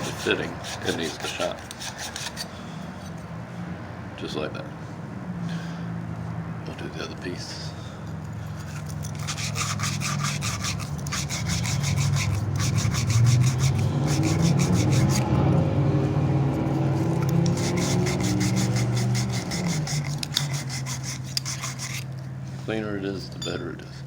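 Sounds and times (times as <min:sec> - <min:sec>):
emery cloth rubbing pipe: 0:00.0 - 0:02.5, 0:08.6 - 0:15.3, 0:16.7 - 0:22.7.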